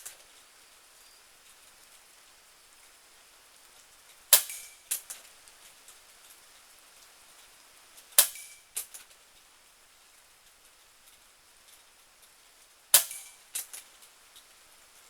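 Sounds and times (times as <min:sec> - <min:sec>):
faint rain hiss: 0:00.0 - 0:15.0
air pistol cracks: 0:04.4 - 0:05.2, 0:08.2 - 0:09.0, 0:13.0 - 0:13.8.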